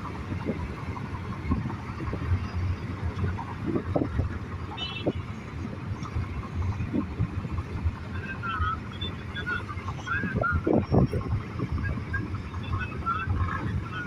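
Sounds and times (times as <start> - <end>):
steady low rumble: 0.0 - 14.0
wind buffeting microphone: 0.0 - 14.0.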